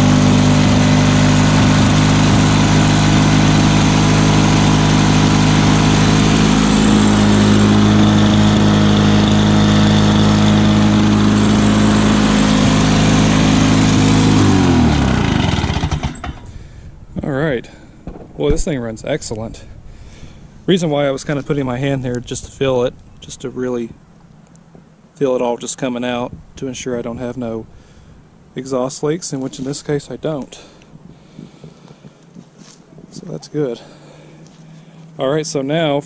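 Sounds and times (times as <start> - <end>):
lawn mower engine running: 0.0 - 17.3.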